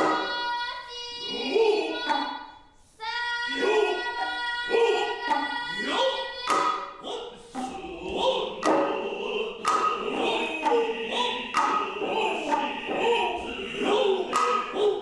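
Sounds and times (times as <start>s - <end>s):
drummers' gliding calls: 0.0s - 0.6s, 3.6s - 15.0s
hand-drum strikes: 0.0s - 0.6s, 6.4s - 15.0s.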